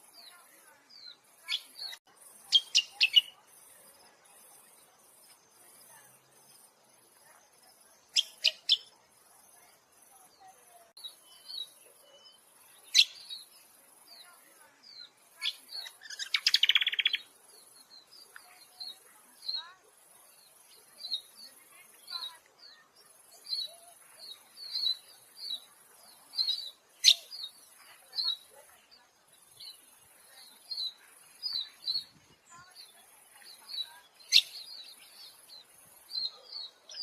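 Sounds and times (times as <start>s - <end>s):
songbirds chirping: 0.0s - 37.0s
fast chattering bird trill: 1.4s - 4.8s, 8.0s - 8.9s, 15.0s - 17.3s, 23.1s - 28.6s, 29.5s - 35.3s.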